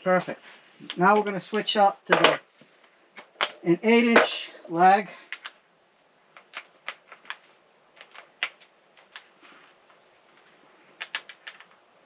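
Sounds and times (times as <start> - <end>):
sharp clicks and light knocks: 6.3 - 11.9.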